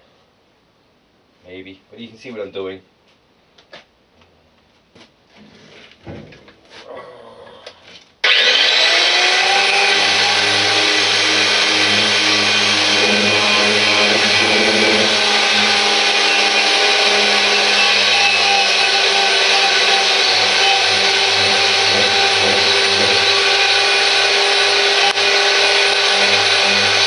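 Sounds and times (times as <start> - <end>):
electric power tool running: 8.2 - 27.0.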